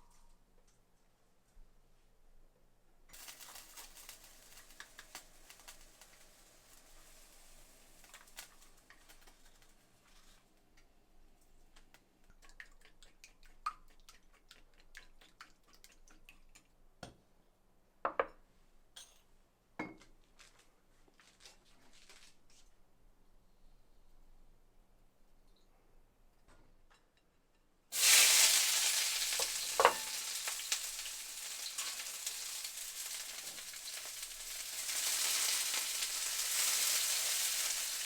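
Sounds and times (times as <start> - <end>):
soft hiss: 3.1 - 11.9, 27.9 - 38.0
dishes and utensils clinking: 29.3 - 30.6.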